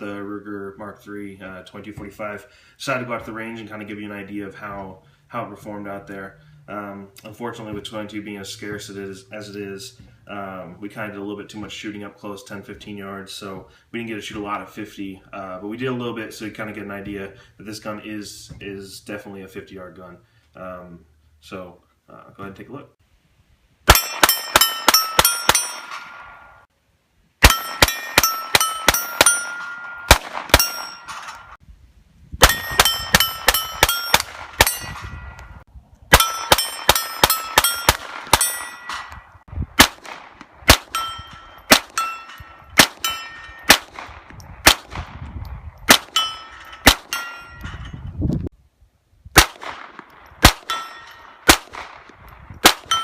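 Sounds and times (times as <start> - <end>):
pistol shots: 23.9 - 26.5, 27.4 - 31.5, 32.4 - 35.3, 36.1 - 39.2, 39.8 - 45.2, 45.8 - 47.5, 49.4 - 53.0
steel plate ringing ping: 23.9 - 26.5, 27.4 - 31.6, 32.4 - 39.3, 40.9 - 43.8, 46.0 - 48.0, 50.6 - 51.4.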